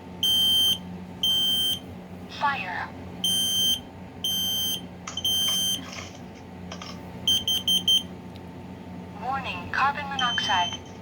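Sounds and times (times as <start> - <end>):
high-pitched alarm beeps: 0.2 - 1.8, 3.2 - 5.8, 7.3 - 8.1, 10.2 - 10.8.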